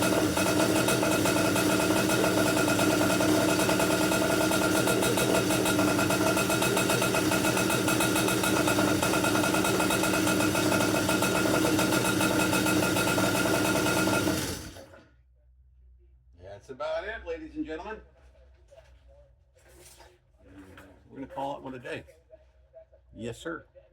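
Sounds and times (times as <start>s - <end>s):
two-stroke kart engine running: 0.0s - 15.0s.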